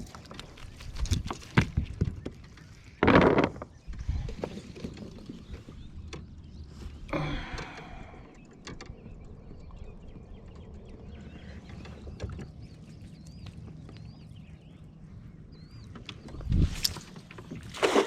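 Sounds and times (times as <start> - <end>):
gear knocking in a kayak: 7.3 - 14.8.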